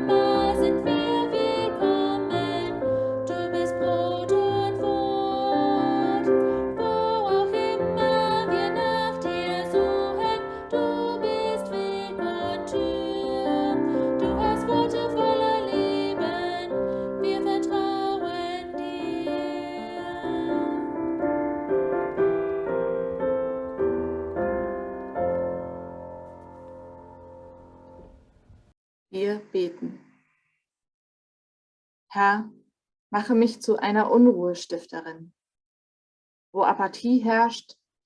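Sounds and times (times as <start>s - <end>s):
slow piano music: 0.0s - 28.5s.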